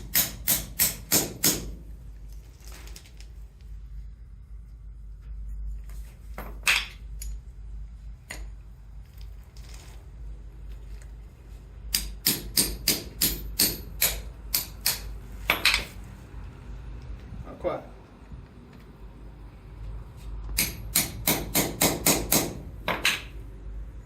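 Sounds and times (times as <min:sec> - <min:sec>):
hammer striking pin punch: 0:00.0 - 0:01.8, 0:11.9 - 0:15.8, 0:20.6 - 0:23.3.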